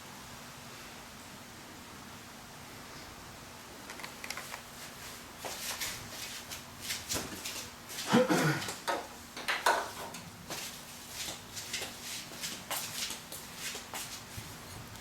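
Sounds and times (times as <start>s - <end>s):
tools clicking and tapping: 8.7s - 10.3s.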